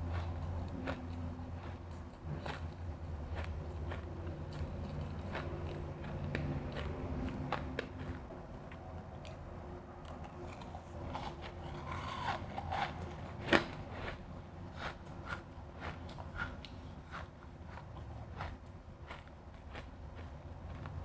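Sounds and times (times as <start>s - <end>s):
ice being chewed: 0.0s - 21.0s.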